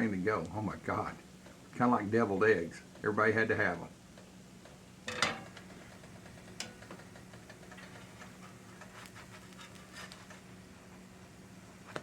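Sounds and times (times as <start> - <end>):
faint steady hum: 0.0 - 12.0
oil popping and crackling: 4.2 - 9.8.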